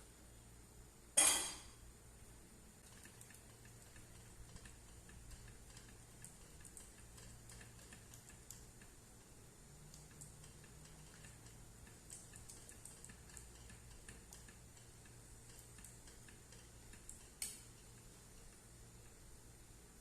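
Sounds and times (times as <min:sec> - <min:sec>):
sharp clink of dishware: 0:01.2 - 0:01.8.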